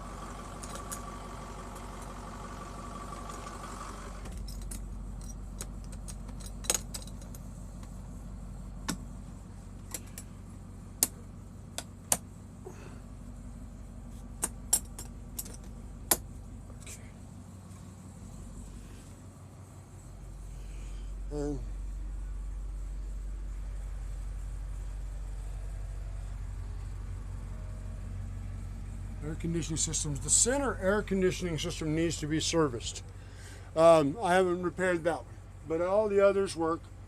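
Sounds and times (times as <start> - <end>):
diesel engine idling: 0.0 - 37.0
steady whine: 0.0 - 37.0
sharp clicks and rattles: 0.5 - 2.2, 4.2 - 8.0, 9.8 - 10.4, 14.4 - 17.0.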